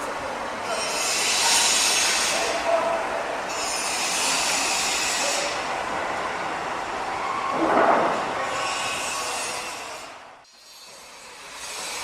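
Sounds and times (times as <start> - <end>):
loud mechanical hiss: 0.7 - 2.7.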